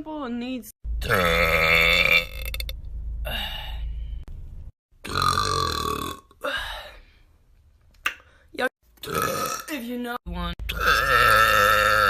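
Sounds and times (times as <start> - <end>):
person burping loudly: 1.0 - 2.8, 5.0 - 6.6, 9.0 - 9.7, 10.7 - 12.0.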